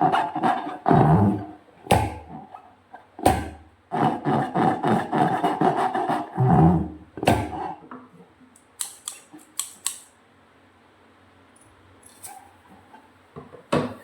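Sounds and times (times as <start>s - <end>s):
rubber balloon squeaking: 0.0s - 2.7s, 3.9s - 7.7s.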